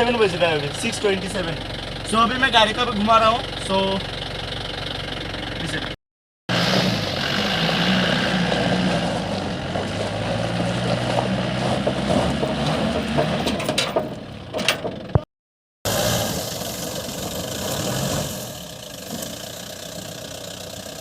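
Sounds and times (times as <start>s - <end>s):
diesel engine running: 0.0s - 15.2s, 15.9s - 21.0s.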